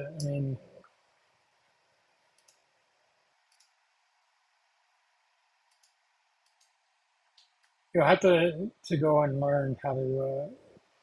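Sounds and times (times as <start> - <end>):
faint computer mouse clicks: 2.4 - 2.6, 3.4 - 3.8, 5.7 - 7.8.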